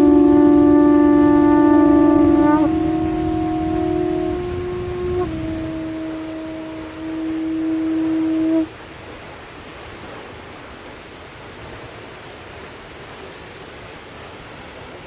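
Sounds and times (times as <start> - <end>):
low horn-like note: 0.0 - 8.7
waterfall rushing: 0.0 - 15.0.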